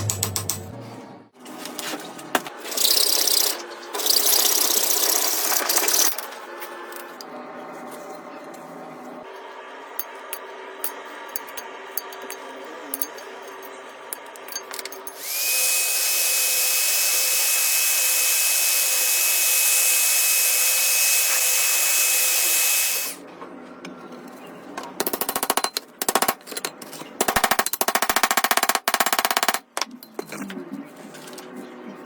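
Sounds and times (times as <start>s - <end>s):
power tool motor whine: 15.2s - 23.2s.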